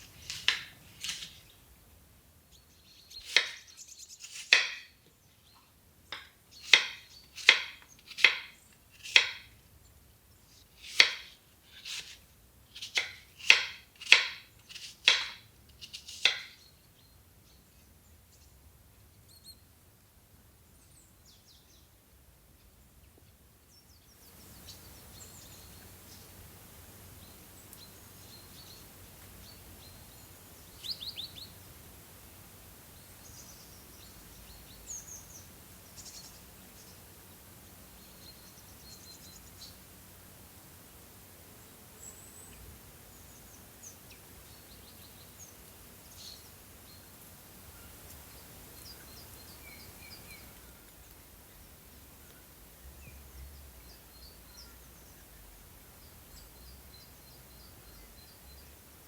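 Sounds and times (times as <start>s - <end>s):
soft outdoor ambience: 0.0s - 59.0s
knife chopping on cutting board: 0.2s - 1.4s, 3.2s - 3.6s, 4.2s - 4.9s, 6.2s - 9.5s, 10.8s - 12.2s, 12.8s - 16.6s
faint bird chirps: 15.8s - 19.7s.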